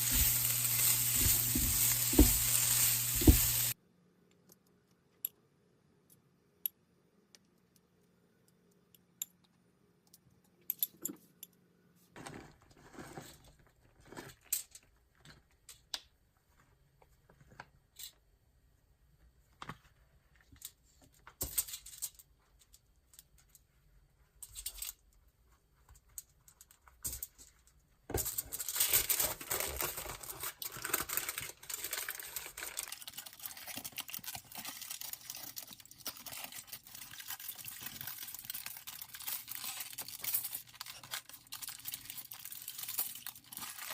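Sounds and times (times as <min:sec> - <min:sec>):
packaging rustling: 0:00.0 - 0:03.8, 0:28.6 - 0:43.9
running tap water: 0:00.0 - 0:03.8.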